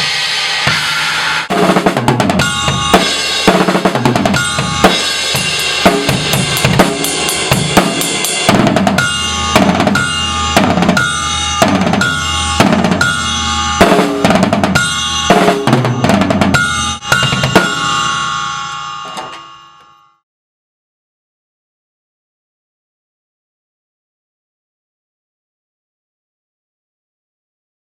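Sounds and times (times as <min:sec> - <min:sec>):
drum kit playing a groove: 0:00.0 - 0:18.3
bell cymbal ringing: 0:02.4 - 0:20.2.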